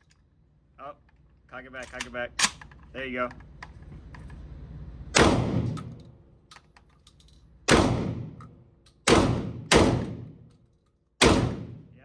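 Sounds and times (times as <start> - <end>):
gunshots with echo: 5.2 - 5.9, 7.7 - 8.4, 9.1 - 10.4, 11.2 - 12.0.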